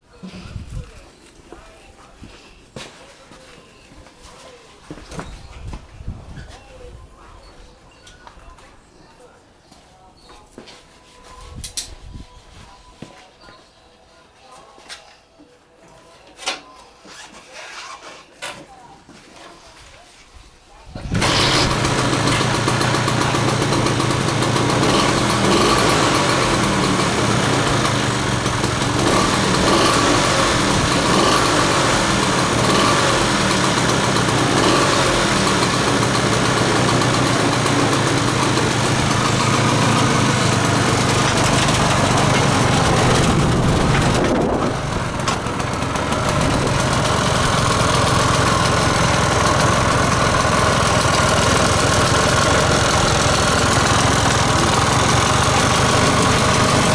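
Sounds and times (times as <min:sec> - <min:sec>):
small two-stroke engine running: 0:21.0 - 0:56.9.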